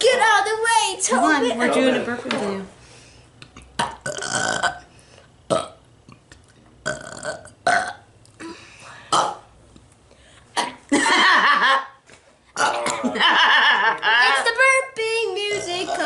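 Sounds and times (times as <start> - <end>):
boy burping: 3.7 - 4.9, 5.5 - 5.8, 6.8 - 9.5, 10.5 - 10.8, 12.6 - 13.2, 15.5 - 16.0
woman burping: 3.8 - 4.9, 5.5 - 5.8, 6.8 - 9.5, 10.5 - 10.8, 12.6 - 13.2, 15.5 - 16.0.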